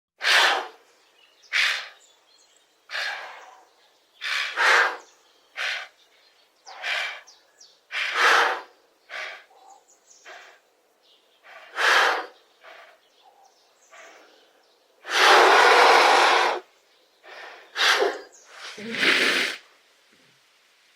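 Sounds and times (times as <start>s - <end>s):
giraffe snorting: 2.9s - 6.0s, 6.7s - 7.3s, 7.9s - 10.6s, 11.4s - 13.1s, 15.0s - 16.6s, 17.2s - 19.6s.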